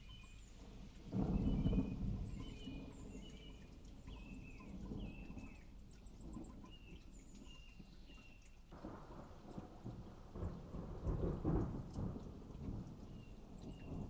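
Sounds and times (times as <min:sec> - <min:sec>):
thunder rumbling: 0:00.7 - 0:03.8, 0:08.8 - 0:14.0.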